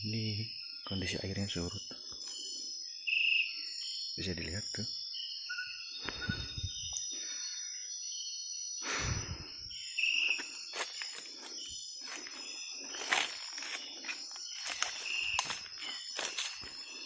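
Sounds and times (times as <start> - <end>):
insect drone: 0.0 - 17.0
footsteps through undergrowth: 10.1 - 17.0.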